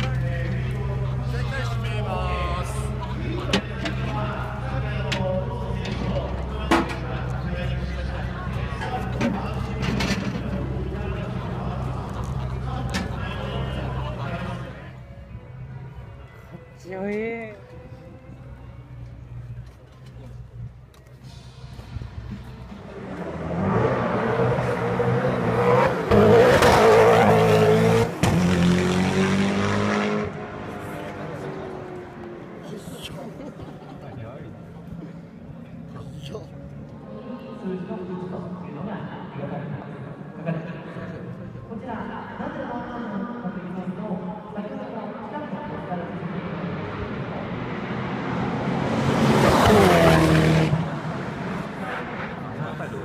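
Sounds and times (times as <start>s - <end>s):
car engine accelerating hard: 21.6s - 33.4s, 45.7s - 53.0s.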